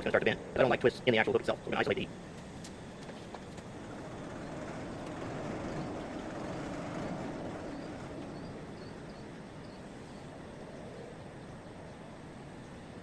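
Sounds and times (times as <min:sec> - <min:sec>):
forge rushing: 0:03.4 - 0:09.6.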